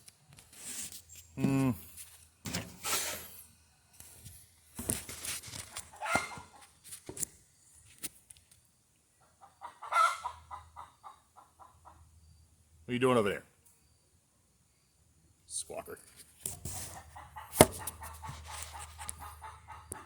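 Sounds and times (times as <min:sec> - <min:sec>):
knocks and rustles of handling: 0:00.3 - 0:03.4, 0:04.0 - 0:08.4, 0:16.1 - 0:19.2.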